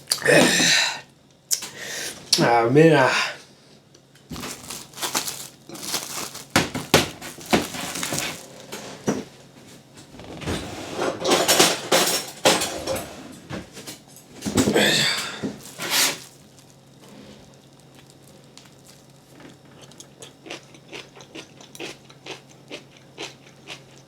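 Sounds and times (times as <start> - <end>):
rustling: 4.3 - 9.0
utensils and dishes clinking: 10.9 - 16.3.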